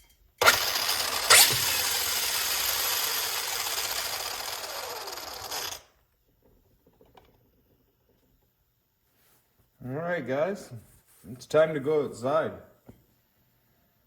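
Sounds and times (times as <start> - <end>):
toy truck drivetrain whirring: 0.4 - 6.0.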